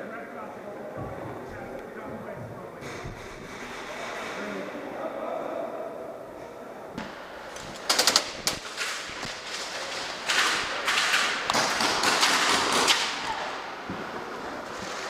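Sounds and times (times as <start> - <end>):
airsoft gun shots: 10.3 - 13.4.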